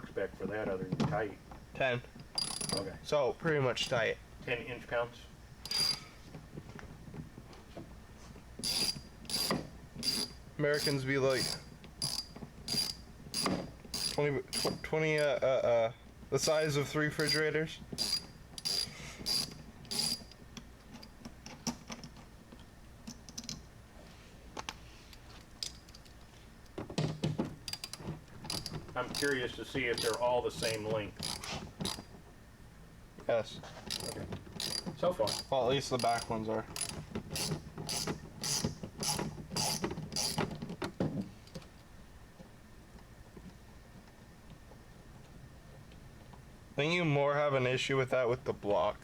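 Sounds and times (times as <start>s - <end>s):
socket ratchet clicking: 2.3s - 2.8s, 5.6s - 6.0s, 8.6s - 14.8s, 18.0s - 20.4s, 27.7s - 29.4s, 31.2s - 32.1s, 33.9s - 40.4s
tool rasping: 5.6s - 6.2s, 8.6s - 14.8s, 18.0s - 20.3s, 27.7s - 32.1s, 33.6s - 40.5s.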